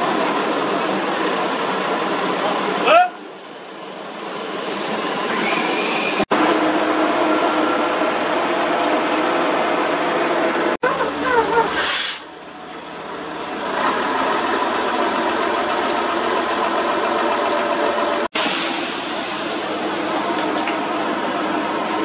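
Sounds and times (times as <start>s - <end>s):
diesel engine running: 6.3s - 22.0s
short hiss of air: 11.7s - 12.3s.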